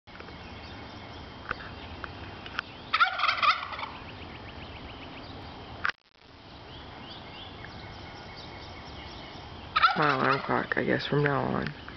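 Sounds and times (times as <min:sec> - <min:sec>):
turkey gobbling: 0:02.9 - 0:04.2, 0:09.7 - 0:10.7.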